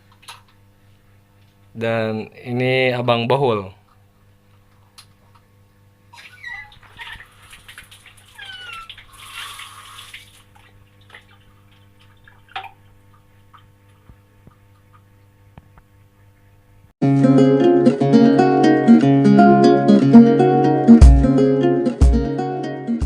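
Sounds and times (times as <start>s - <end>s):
pipe squeaking: 6.1s - 10.4s
rush of water: 6.7s - 11.4s.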